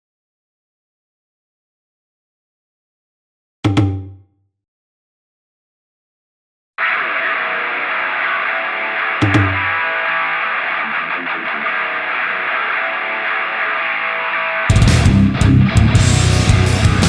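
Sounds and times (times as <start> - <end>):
muffled rock music: 6.8 - 17.0
heavy low hit: 14.7 - 17.0.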